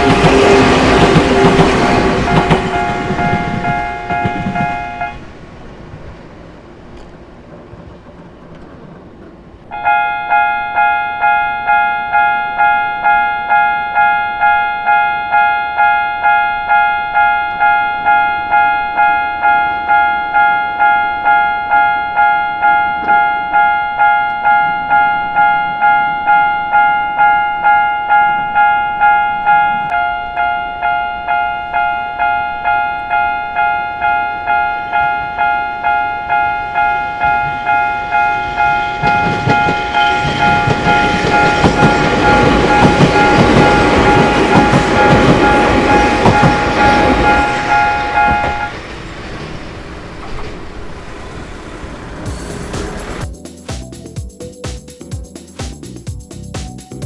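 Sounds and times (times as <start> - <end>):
level-crossing warning bell: 0.0 - 5.3, 9.7 - 53.5.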